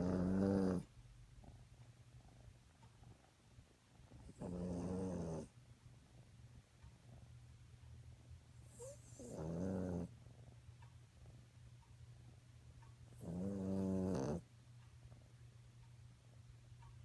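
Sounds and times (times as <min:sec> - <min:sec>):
dog snoring: 0:00.0 - 0:01.6, 0:04.1 - 0:05.6, 0:08.6 - 0:10.4, 0:13.1 - 0:14.5
faint low rumble: 0:00.0 - 0:17.0.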